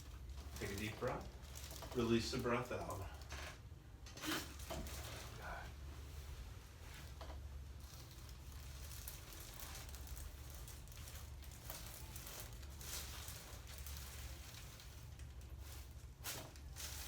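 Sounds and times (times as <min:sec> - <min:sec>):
steady low hum: 0:00.0 - 0:17.0
clothing rustling on table: 0:04.2 - 0:17.0.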